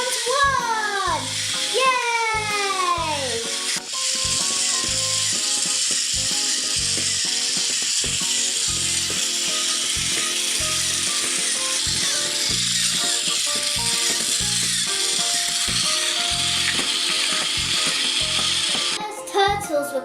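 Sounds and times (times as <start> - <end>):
toy mechanism ratcheting whir: 0.0 - 19.0
background music with bass notes: 6.1 - 7.2.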